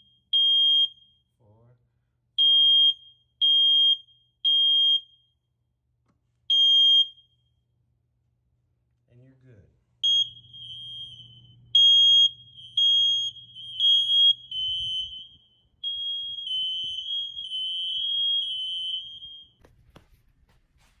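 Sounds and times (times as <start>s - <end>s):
smoke alarm beeps: 0.0s - 1.3s, 2.4s - 5.4s, 6.5s - 7.6s, 10.0s - 19.8s
smoke alarm tone: 0.0s - 1.3s, 2.4s - 5.4s, 6.5s - 7.6s, 10.0s - 19.7s.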